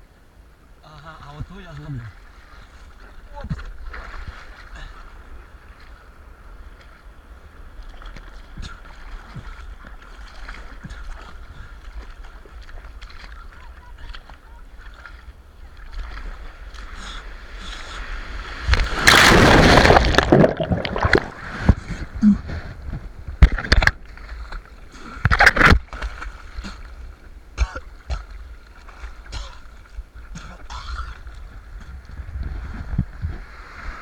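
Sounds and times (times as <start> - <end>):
seawater splashing and sloshing: 1.8 - 34.0
loud rush of water: 16.1 - 22.7.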